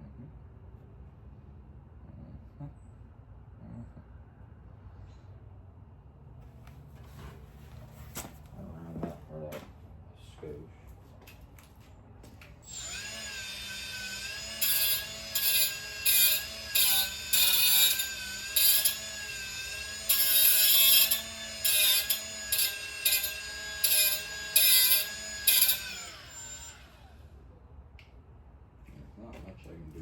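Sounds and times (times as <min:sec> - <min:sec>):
power cutting tool whining: 0:12.6 - 0:27.2
bursts of cutting sheet metal: 0:12.7 - 0:26.8.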